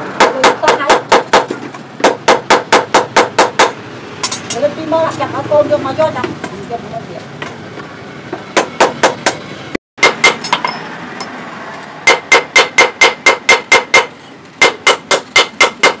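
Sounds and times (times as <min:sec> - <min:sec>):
hammer striking metal anvil: 0:10.0 - 0:11.3, 0:12.0 - 0:16.0.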